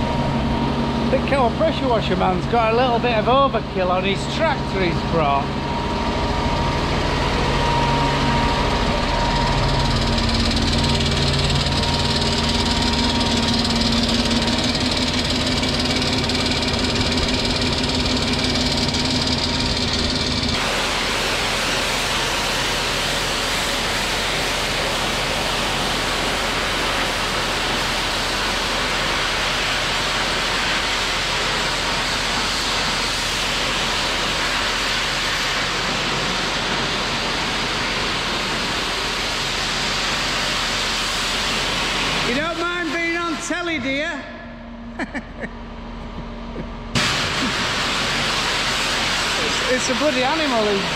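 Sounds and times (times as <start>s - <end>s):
pressure washer engine running: 0.0s - 44.2s, 45.0s - 50.9s
water spray hissing on walls: 20.6s - 42.5s, 47.0s - 50.9s.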